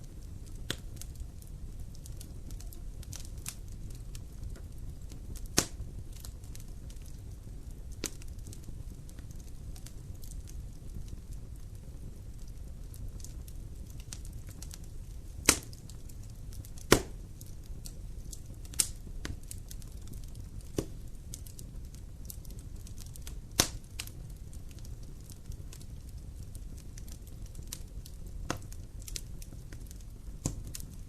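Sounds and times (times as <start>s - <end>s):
fireplace fire crackling: 0.0s - 31.0s
sharp loud fire pops: 16.9s - 17.2s.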